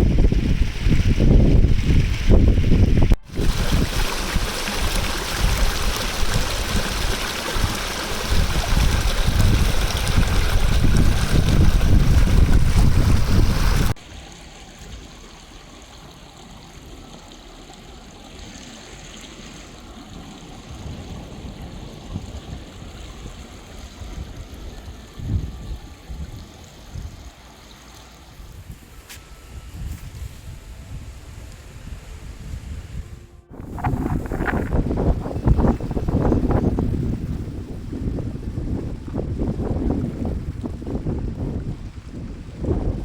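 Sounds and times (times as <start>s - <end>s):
stream trickling: 0.0s - 43.0s
loud rushing rumble: 32.0s - 37.4s.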